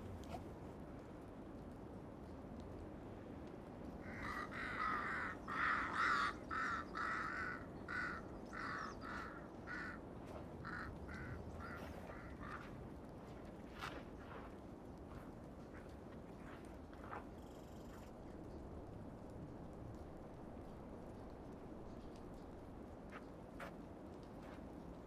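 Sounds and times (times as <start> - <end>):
crow cawing: 4.0 - 12.9.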